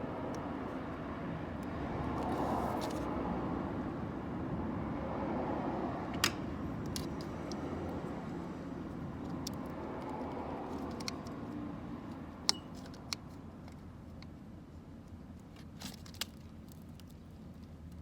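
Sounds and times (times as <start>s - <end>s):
tools clicking and clinking: 12.5s - 13.2s.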